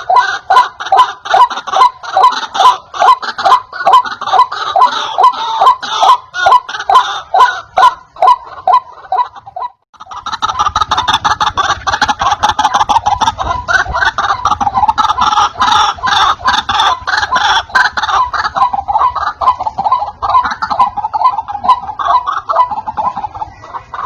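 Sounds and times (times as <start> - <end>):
waterhen croaking calls: 0.0 - 24.0.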